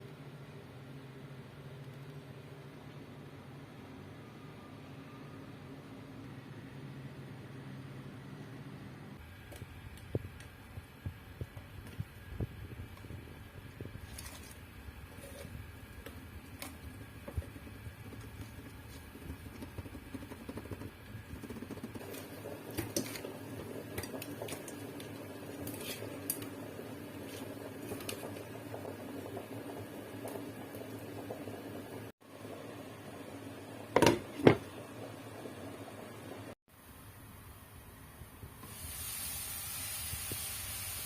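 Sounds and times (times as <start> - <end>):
shrimp sizzling in a pan: 38.7 - 41.0.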